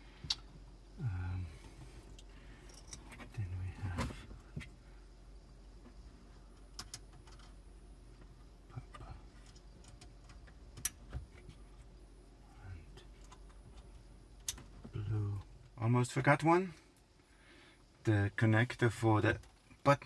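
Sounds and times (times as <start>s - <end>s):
low hum: 0.0s - 15.9s.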